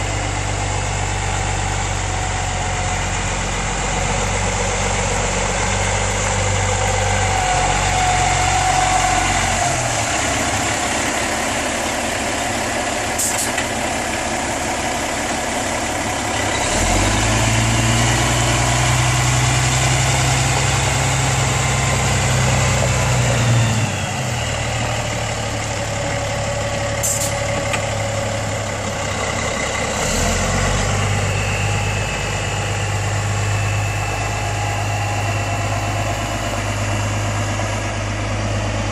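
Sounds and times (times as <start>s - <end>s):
diesel truck engine idling: 0.0s - 38.9s.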